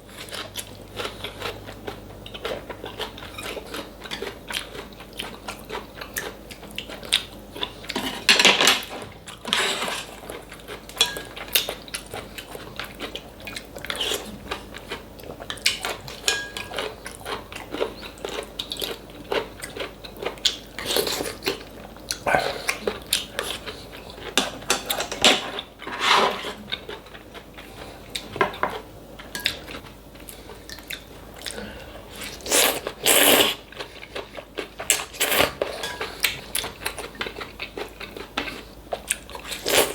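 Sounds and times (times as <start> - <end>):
chewing and crunching: 0.0 - 39.9.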